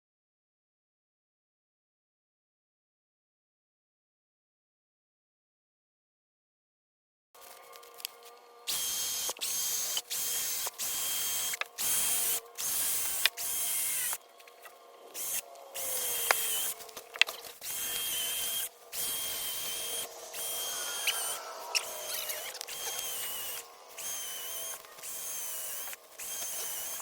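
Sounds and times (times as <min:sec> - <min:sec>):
handheld power tool bursts: 0:17.6 - 0:27.0.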